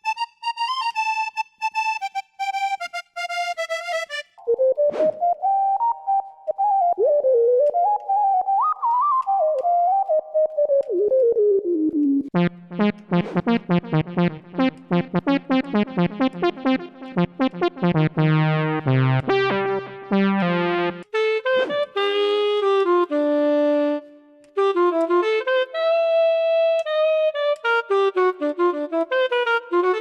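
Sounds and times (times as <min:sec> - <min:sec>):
electronic wind synthesizer notes: 0:12.4 - 0:24.0.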